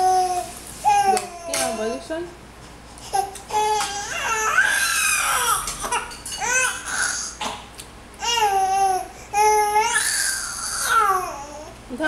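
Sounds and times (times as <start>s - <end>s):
baby babbling: 0.0s - 1.6s, 8.2s - 11.7s.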